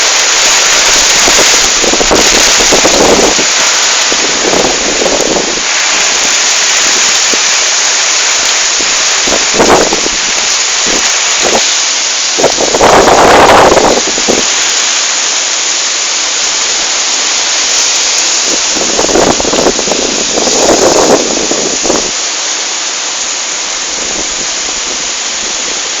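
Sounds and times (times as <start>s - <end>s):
wind buffeting microphone: 0.0s - 14.7s, 18.3s - 22.2s
heavy rain pouring: 0.0s - 26.0s.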